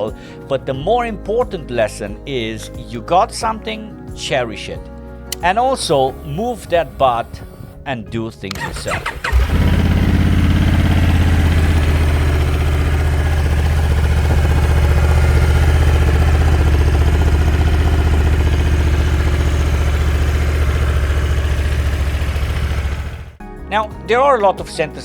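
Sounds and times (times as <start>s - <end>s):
motorcycle engine idling: 8.6s - 23.4s.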